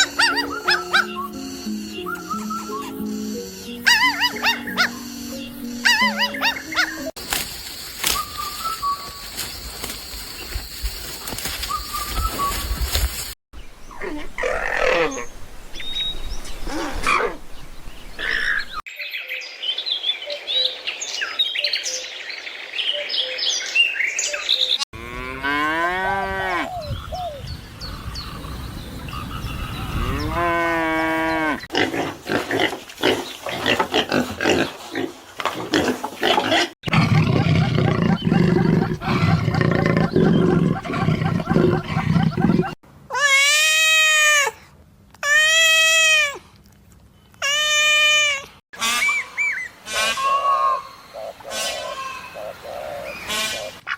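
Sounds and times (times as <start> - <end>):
animal calls: 0.0 - 7.2, 36.5 - 44.5.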